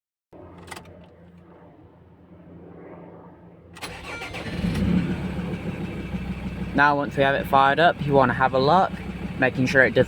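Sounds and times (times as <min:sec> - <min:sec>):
diesel engine cranking and running: 0:03.8 - 0:10.0.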